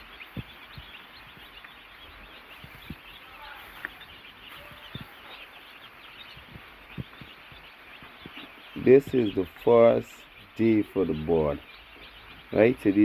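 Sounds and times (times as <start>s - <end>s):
soft low thumps: 0.0s - 3.2s, 6.2s - 11.0s
baby chicks peeping: 0.0s - 13.0s.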